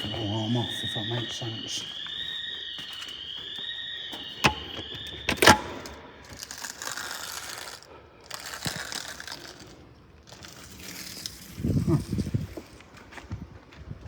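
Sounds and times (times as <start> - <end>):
store alarm wavering tone: 0.0 - 7.8
rustling and scuffing: 1.8 - 5.1, 10.4 - 14.0.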